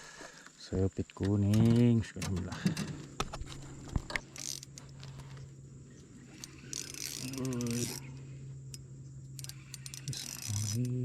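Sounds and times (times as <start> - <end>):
fishing reel clicking: 4.3 - 5.0, 6.3 - 11.0.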